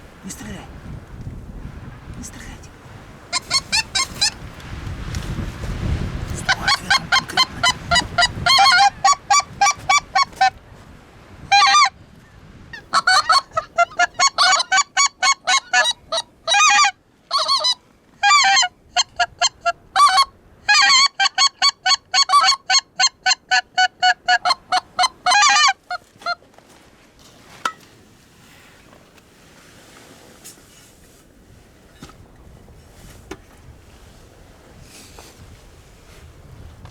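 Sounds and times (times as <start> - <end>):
geese honking: 3.3 - 4.4, 6.4 - 10.5, 11.5 - 11.9, 12.8 - 26.4.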